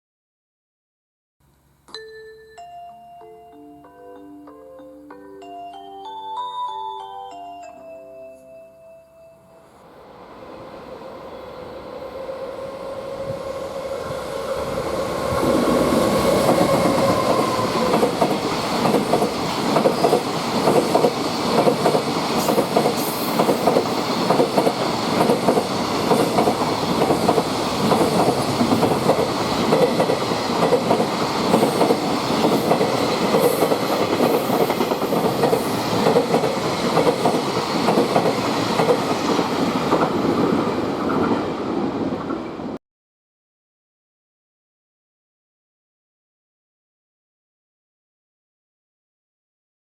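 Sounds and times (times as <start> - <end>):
electric locomotive whine: 9.3 - 42.8.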